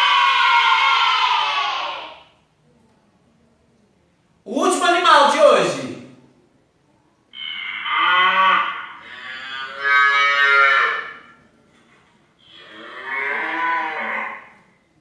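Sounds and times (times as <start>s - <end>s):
cattle mooing: 7.4s - 11.3s, 12.4s - 14.6s.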